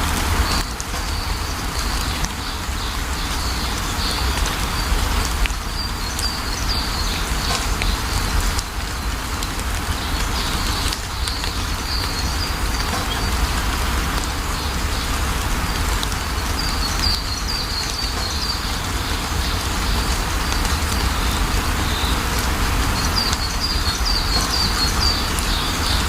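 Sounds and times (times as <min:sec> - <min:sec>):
steady rain falling: 0:00.0 - 0:26.0
small birds chirping: 0:00.4 - 0:26.0.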